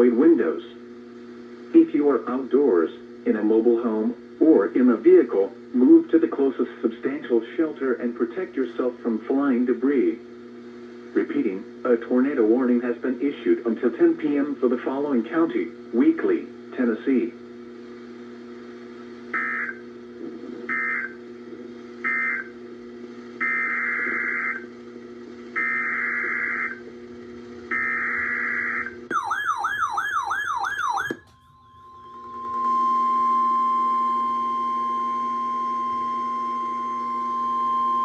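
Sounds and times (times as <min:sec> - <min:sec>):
low steady hum: 0:00.0 - 0:38.0
steady warning alarm tone: 0:19.3 - 0:19.9, 0:20.7 - 0:21.3, 0:22.0 - 0:22.6, 0:23.4 - 0:24.7, 0:25.5 - 0:26.9, 0:27.7 - 0:38.0.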